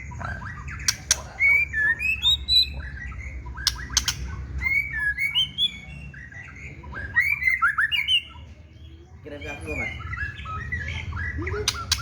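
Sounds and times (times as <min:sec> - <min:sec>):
bird whistling song: 0:00.0 - 0:12.0
sharp clicks: 0:11.6 - 0:12.0.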